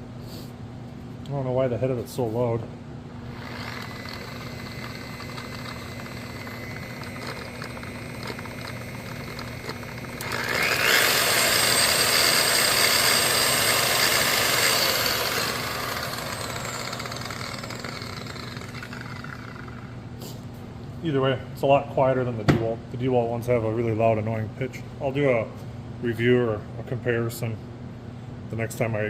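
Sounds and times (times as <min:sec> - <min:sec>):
polisher running with loud gears: 0:03.3 - 0:20.0
high whine: 0:03.3 - 0:20.1.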